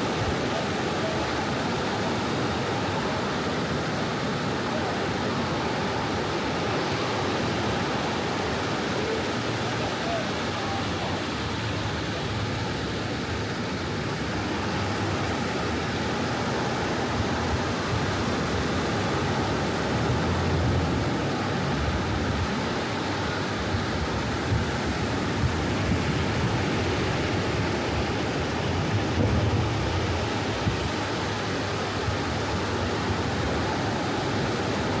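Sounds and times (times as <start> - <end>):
ocean waves on beach: 0.0 - 35.0.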